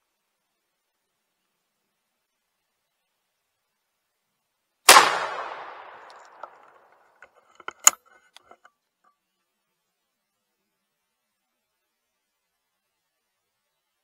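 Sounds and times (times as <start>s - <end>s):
shotgun blast with echo: 4.9s - 6.7s
sharp clicks: 4.9s - 8.7s.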